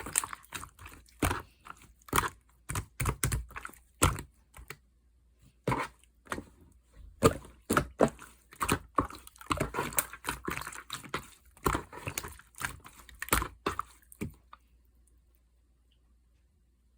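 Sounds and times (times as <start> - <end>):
slime squishing with wet pops: 0.0 - 4.8, 7.2 - 14.6.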